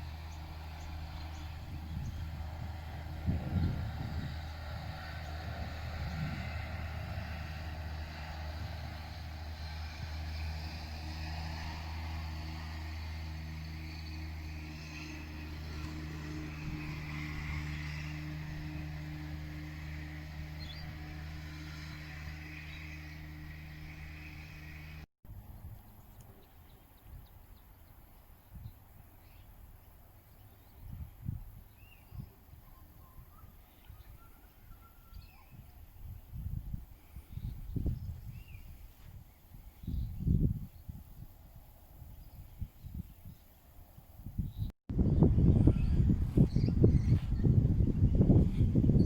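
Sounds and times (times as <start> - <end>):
low engine drone: 0.0 - 25.1.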